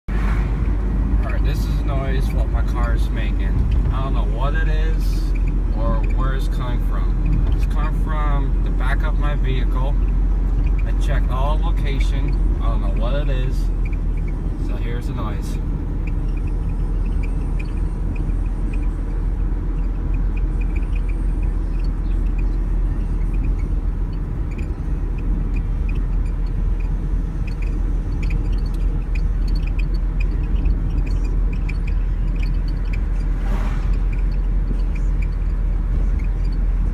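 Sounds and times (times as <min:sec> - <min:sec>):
low road rumble: 0:00.0 - 0:36.9
short high squeaks from wheel: 0:02.8 - 0:36.9.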